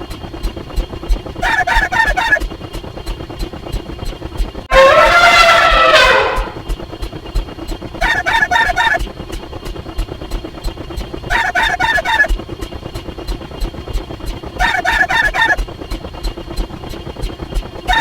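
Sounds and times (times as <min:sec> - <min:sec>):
steady ticking: 0:00.0 - 0:18.0.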